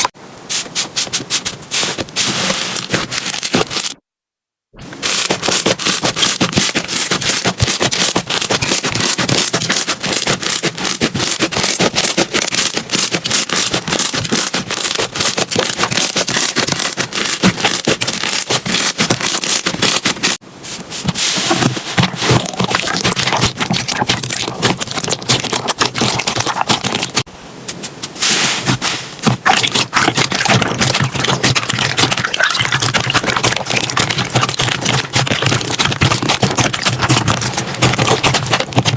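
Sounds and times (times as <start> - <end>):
slime crackling and popping: 5.0 - 20.4, 22.2 - 27.3, 29.2 - 38.9.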